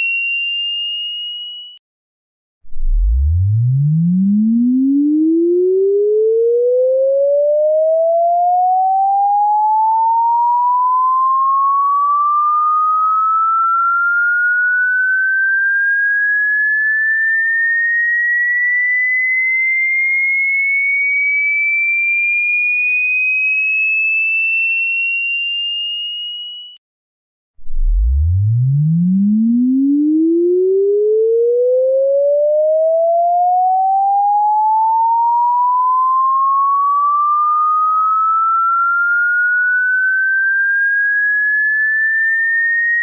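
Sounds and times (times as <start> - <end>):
electronic sine tone sweeping upward: 2.7 - 18.6, 27.6 - 43.0.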